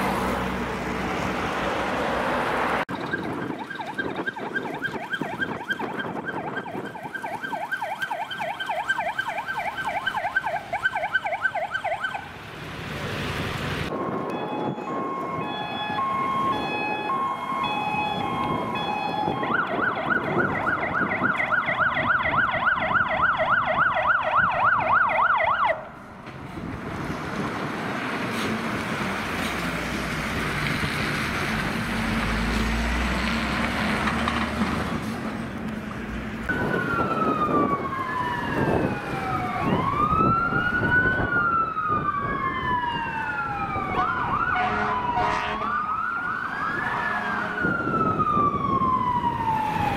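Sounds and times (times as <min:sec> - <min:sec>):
wail sirens rising and falling: 0:00.0 - 0:12.4, 0:13.8 - 0:26.1, 0:36.3 - 0:49.9
truck engine and tyres passing: 0:00.0 - 0:49.9
fast yelp siren: 0:02.9 - 0:12.3, 0:13.9 - 0:25.9, 0:36.5 - 0:49.9
siren horn notes: 0:13.9 - 0:23.2, 0:43.4 - 0:49.9.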